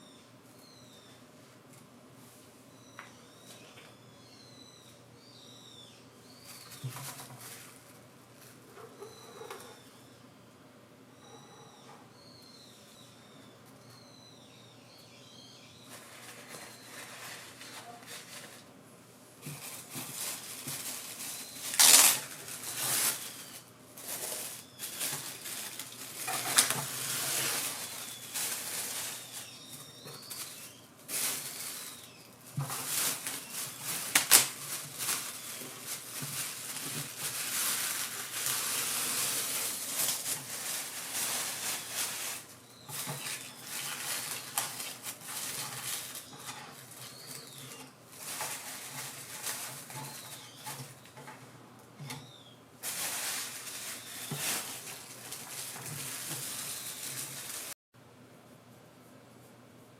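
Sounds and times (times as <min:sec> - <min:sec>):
rustling and scraping: 0:06.4 - 0:09.8, 0:15.8 - 0:18.8, 0:19.4 - 0:57.8.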